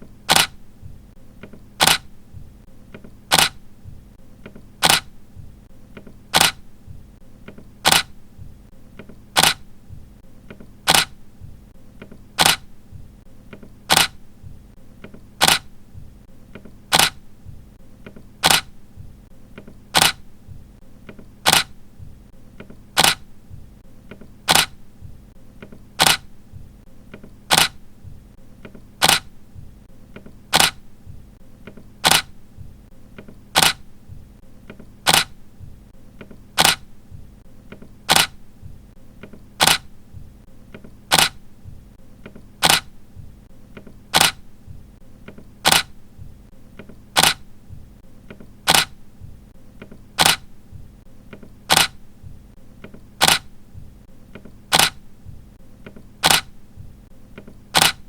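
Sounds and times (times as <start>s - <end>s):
camera shutter clicking: 0.3s - 0.6s, 1.8s - 2.1s, 3.3s - 3.6s, 4.8s - 5.1s, 6.3s - 6.6s, 7.8s - 8.2s, 9.4s - 9.7s, 10.8s - 11.2s, 12.4s - 12.7s, 13.9s - 14.2s, 15.4s - 15.7s, 16.9s - 17.2s, 18.4s - 18.7s, 19.9s - 20.2s, 21.4s - 21.8s, 23.0s - 23.3s, 24.4s - 24.8s, 26.0s - 26.3s, 27.5s - 27.8s, 29.0s - 29.3s, 30.5s - 30.8s, 32.0s - 32.4s, 33.5s - 33.9s, 35.0s - 35.4s, 36.6s - 36.8s, 38.1s - 38.4s, 39.6s - 39.9s, 41.1s - 41.4s, 42.6s - 42.9s, 44.1s - 44.4s, 45.6s - 45.9s, 47.2s - 47.4s, 48.6s - 49.0s, 50.2s - 50.5s, 51.7s - 52.0s, 53.2s - 53.5s, 54.7s - 55.0s, 56.2s - 56.5s, 57.7s - 58.0s.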